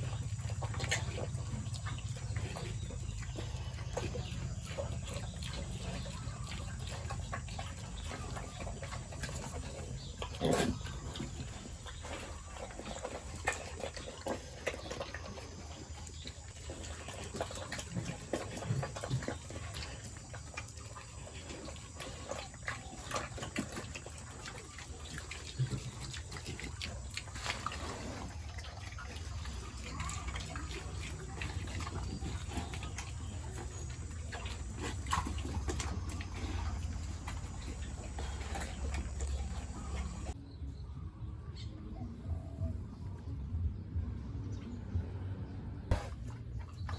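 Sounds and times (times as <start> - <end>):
pigs: 0.0 - 46.9
steady low hum: 26.3 - 46.9.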